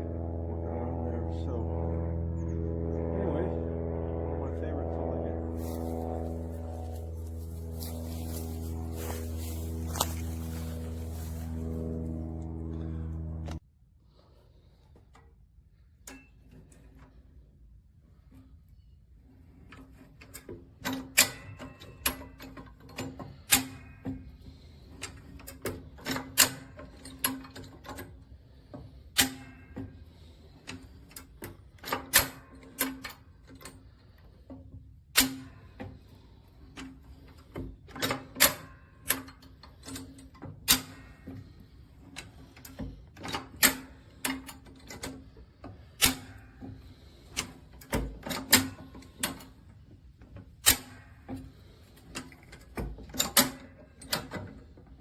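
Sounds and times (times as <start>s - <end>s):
steady low hum: 0.0s - 16.2s.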